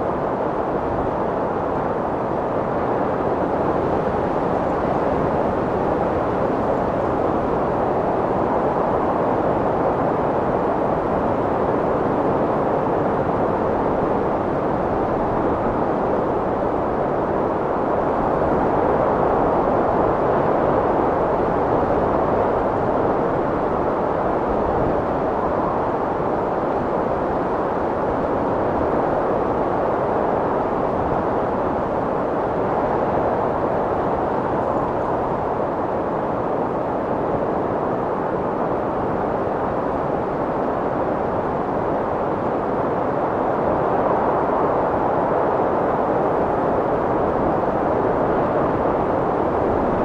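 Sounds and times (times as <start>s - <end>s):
strong wind blowing: 0.0s - 50.0s.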